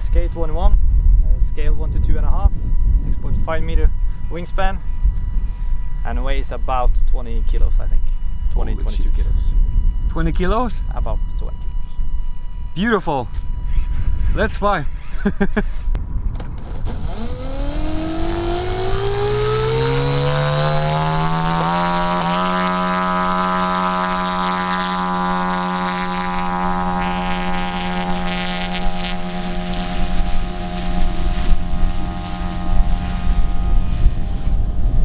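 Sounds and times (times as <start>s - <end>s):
low rumble: 0.0s - 14.3s
electric motor and propeller whine: 0.0s - 35.0s.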